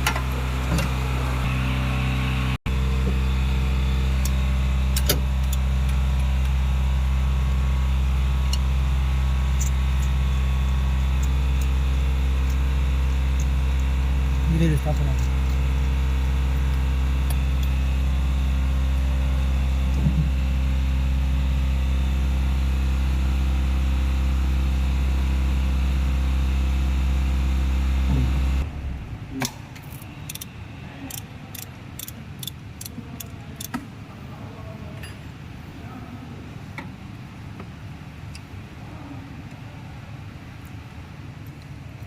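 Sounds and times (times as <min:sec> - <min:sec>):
truck engine idling: 0:00.0 - 0:34.3
metallic clicks and taps: 0:31.1 - 0:33.8.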